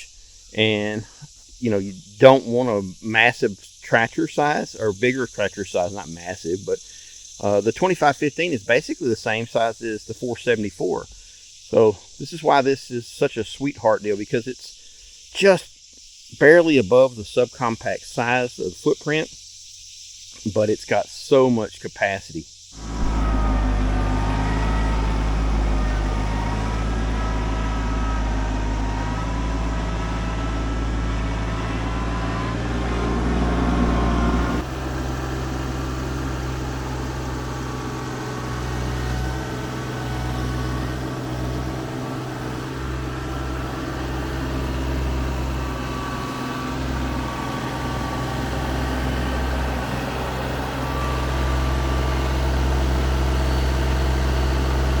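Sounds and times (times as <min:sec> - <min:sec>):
tractor diesel engine running: 0:22.8 - 0:55.0.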